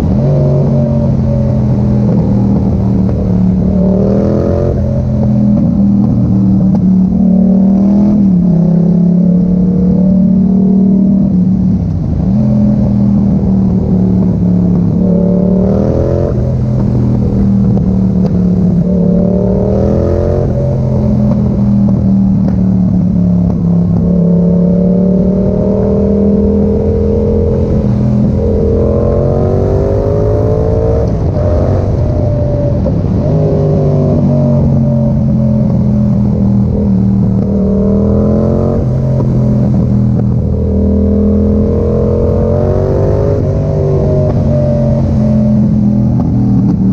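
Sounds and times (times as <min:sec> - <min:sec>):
loud motorcycle engine accelerating: 0:00.0 - 0:46.9.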